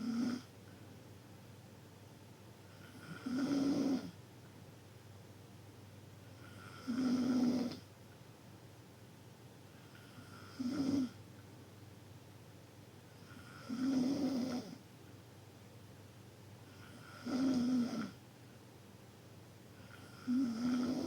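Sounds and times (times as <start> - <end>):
loud snoring: 0.0 - 0.5, 2.8 - 4.1, 6.4 - 7.8, 10.0 - 11.2, 13.3 - 14.8, 16.7 - 18.2, 19.9 - 21.0.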